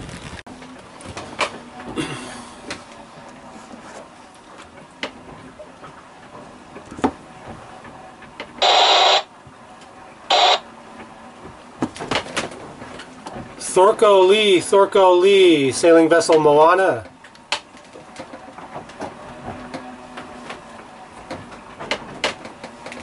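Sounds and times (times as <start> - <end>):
radio static hiss bursts: 8.6 - 9.3, 10.3 - 10.6.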